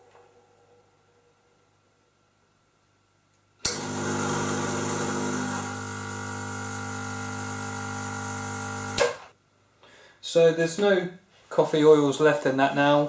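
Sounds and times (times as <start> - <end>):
espresso machine pump humming: 3.6 - 9.2.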